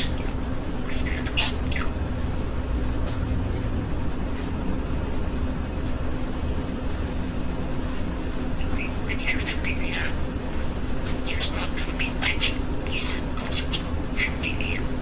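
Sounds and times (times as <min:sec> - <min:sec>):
budgerigar chirping: 0:00.0 - 0:02.0, 0:08.6 - 0:10.2, 0:11.0 - 0:15.0
steady low hum: 0:00.0 - 0:15.0.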